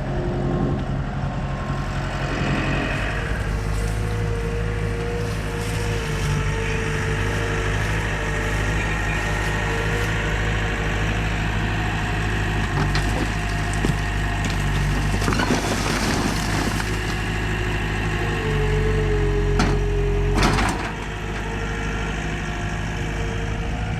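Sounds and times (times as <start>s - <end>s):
skid steer engine running: 0.0s - 23.9s
clattering and crackling: 12.6s - 17.4s.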